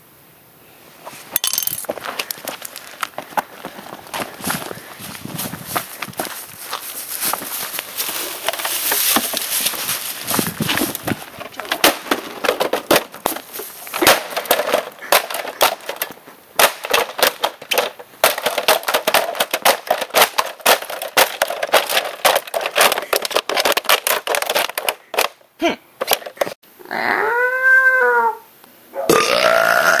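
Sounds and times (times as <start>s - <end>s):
sharp knocks and clatter: 10.4s - 25.4s.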